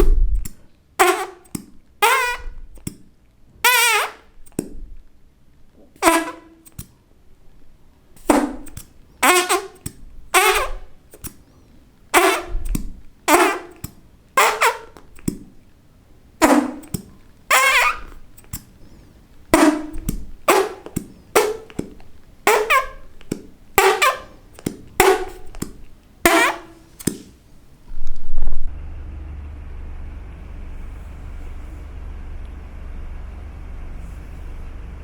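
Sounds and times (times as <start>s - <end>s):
fart sound effect noises: 1.0s - 2.5s, 10.4s - 10.8s, 12.2s - 12.7s, 13.3s - 13.8s, 14.4s - 15.0s, 16.4s - 16.9s, 17.5s - 18.2s, 19.6s - 21.8s, 22.5s - 23.1s, 23.8s - 24.4s, 26.3s - 26.9s
steady low rumble: 27.9s - 35.0s.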